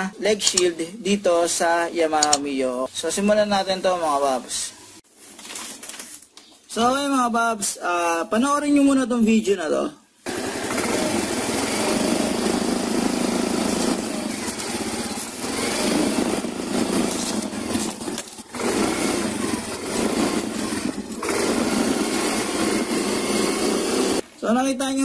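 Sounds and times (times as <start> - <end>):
scooter engine running: 10.3 - 24.2.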